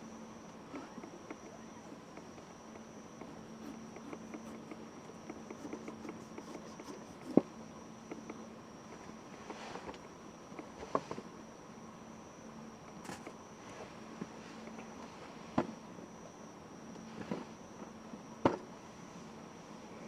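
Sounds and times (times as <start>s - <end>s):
insects trilling: 0.0s - 8.9s
faint low hum: 0.0s - 20.0s.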